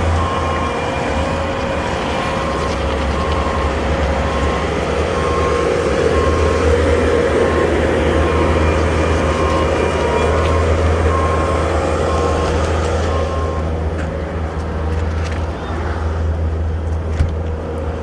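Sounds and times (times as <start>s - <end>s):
backup alarm beeping: 0.0s - 13.8s
diesel engine running under load: 0.0s - 18.0s.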